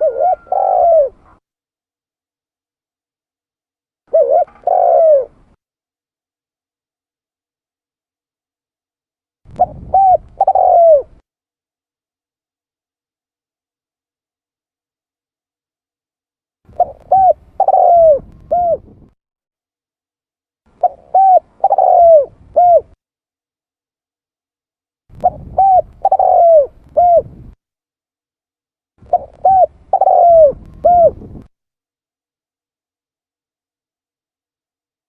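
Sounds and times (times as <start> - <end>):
dove cooing: 0.0 - 1.4, 4.1 - 5.6, 9.5 - 11.2, 16.7 - 19.0, 20.8 - 23.0, 25.2 - 27.6, 29.0 - 31.5.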